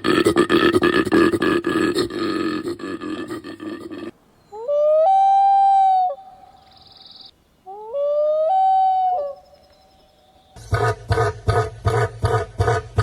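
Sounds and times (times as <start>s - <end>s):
howl-like animal calls: 7.7s - 9.4s.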